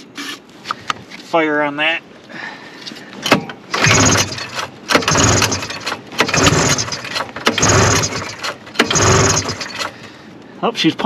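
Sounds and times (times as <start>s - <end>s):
engine pull-starter yanked: 3.2s - 10.2s
engine turning over: 3.3s - 10.1s.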